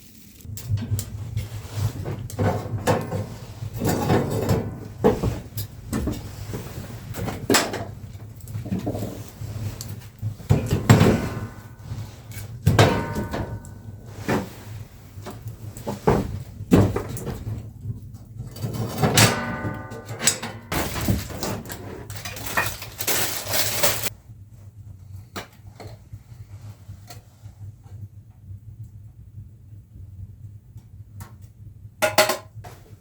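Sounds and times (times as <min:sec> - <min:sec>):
knocks and scrapes of handling: 0:00.0 - 0:17.6.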